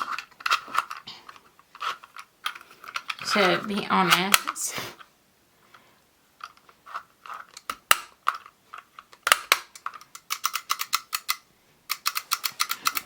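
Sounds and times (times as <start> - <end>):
plastic toy figures clicking: 1.8 - 4.6, 7.6 - 13.0.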